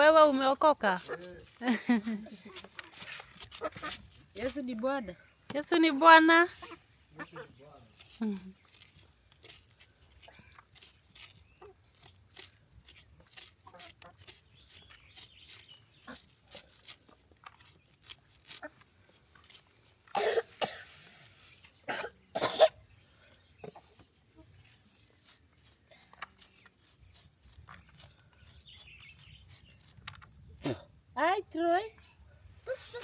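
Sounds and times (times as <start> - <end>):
person coughing: 20.1 - 20.9, 21.9 - 22.8, 30.6 - 30.9.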